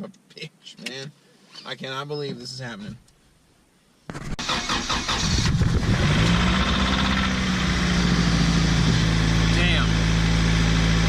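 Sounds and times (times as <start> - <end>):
car engine starting and idling: 4.1 - 11.0.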